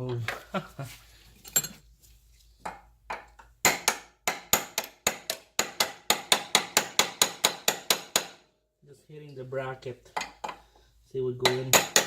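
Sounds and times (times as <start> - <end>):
hammer striking metal: 11.4 - 12.0.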